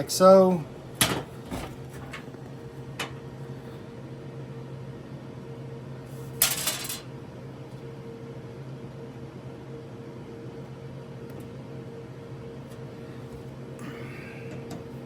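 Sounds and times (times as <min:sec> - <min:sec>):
steady low hum: 0:00.0 - 0:15.0
small parts clattering: 0:06.4 - 0:07.0.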